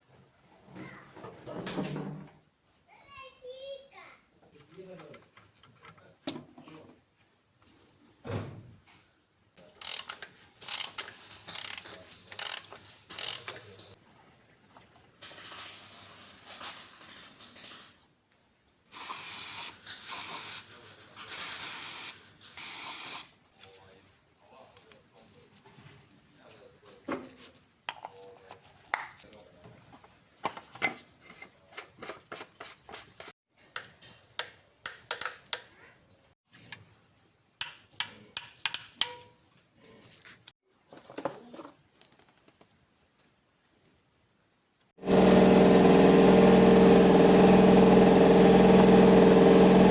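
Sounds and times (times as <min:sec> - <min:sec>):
tools and parts clicking: 0:09.8 - 0:14.0, 0:33.7 - 0:35.7, 0:37.6 - 0:39.2
hissing spray bursts: 0:19.0 - 0:20.7.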